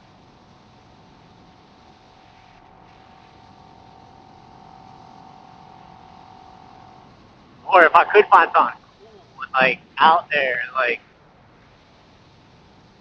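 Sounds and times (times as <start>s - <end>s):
motorcycle engine cruising: 0.0s - 7.8s
wind-muffled road noise: 0.0s - 13.0s.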